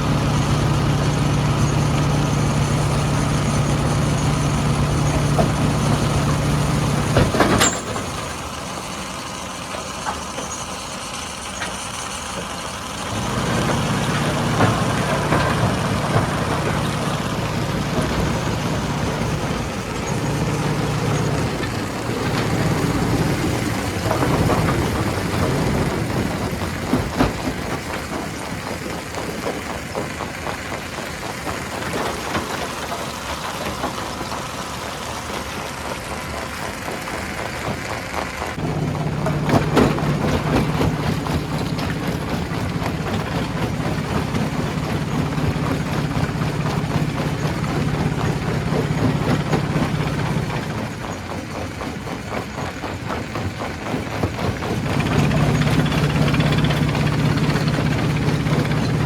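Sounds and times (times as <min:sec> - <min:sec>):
low engine hum: 0:00.0 - 0:59.0
stone crusher clattering: 0:01.0 - 0:08.6, 0:13.2 - 0:30.2, 0:38.6 - 0:59.0.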